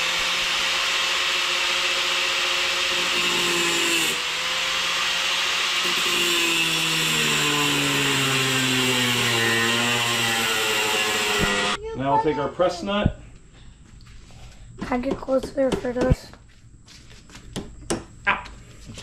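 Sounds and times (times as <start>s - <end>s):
cutoff wheel grinding steel: 0.0s - 11.8s.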